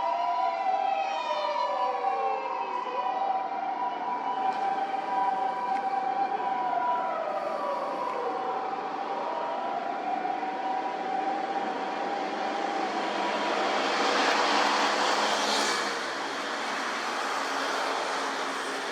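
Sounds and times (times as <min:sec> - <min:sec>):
emergency vehicle siren: 0:00.0 - 0:18.9
vehicle passing with road noise: 0:10.7 - 0:18.9.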